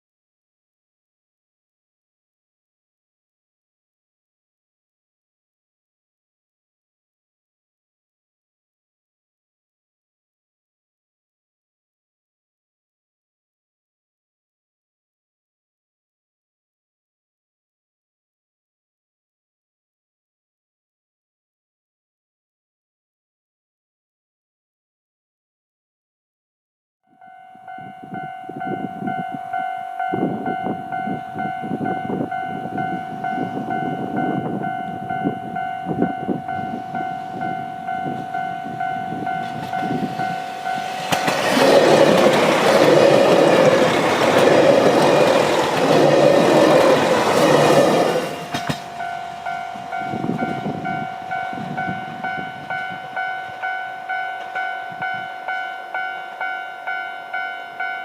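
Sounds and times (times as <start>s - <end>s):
level-crossing alarm clanging: 27.1s - 58.0s
diesel train passing: 27.2s - 58.0s.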